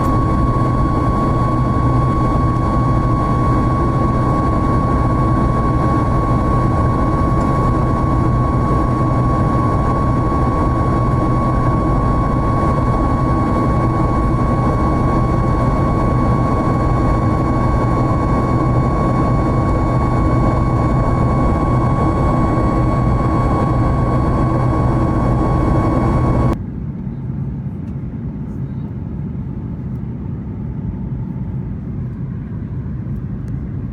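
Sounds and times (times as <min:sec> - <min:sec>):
steady high tone: 0:00.0 - 0:26.6
airliner cabin engine rush: 0:00.0 - 0:33.9
low hum: 0:00.0 - 0:33.9.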